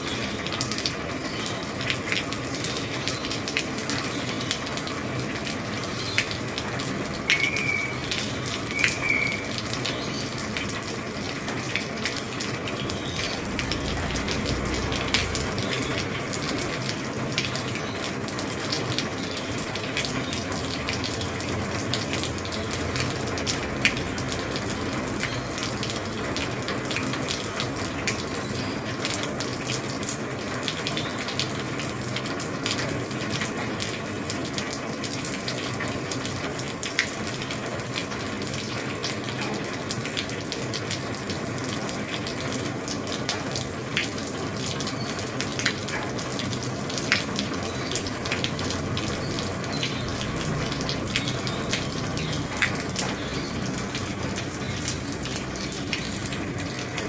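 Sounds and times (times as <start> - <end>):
heavy rain on roof: 0.0 - 57.0
high chirps: 8.7 - 9.6
short low rumble: 12.8 - 17.0.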